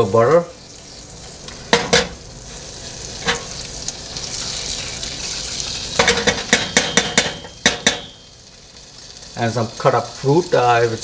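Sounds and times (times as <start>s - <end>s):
butter sizzling in a pan: 0.0s - 11.0s
utensil knocking on pan: 6.0s - 8.2s.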